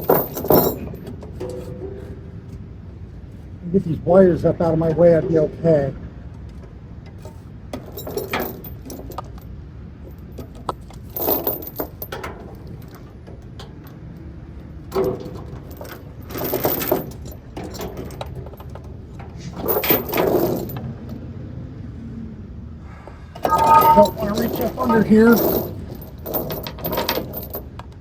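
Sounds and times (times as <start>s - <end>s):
chain links clinking and rattling: 0.0s - 2.6s, 7.2s - 13.1s, 14.9s - 21.1s, 23.4s - 27.9s.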